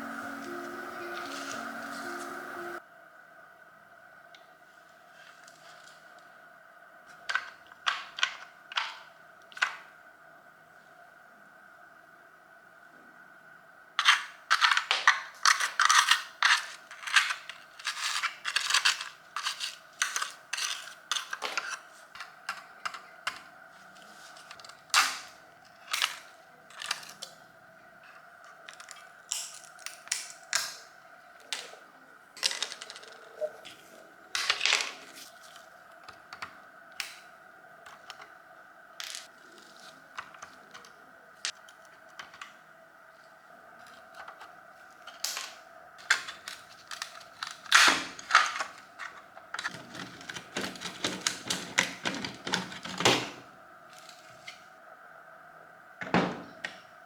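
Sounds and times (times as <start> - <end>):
faint steady hum: 0.0 - 57.0.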